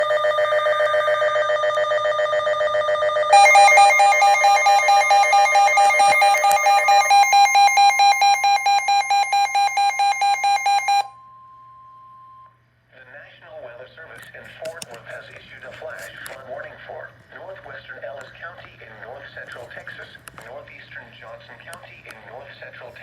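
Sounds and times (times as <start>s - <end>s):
faint steady beep: 3.3s - 12.6s.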